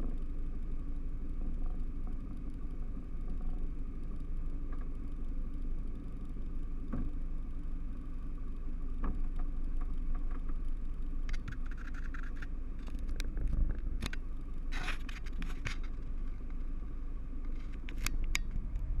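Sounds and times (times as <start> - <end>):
engine running steadily: 0.0 - 19.0
scrape: 14.7 - 15.9.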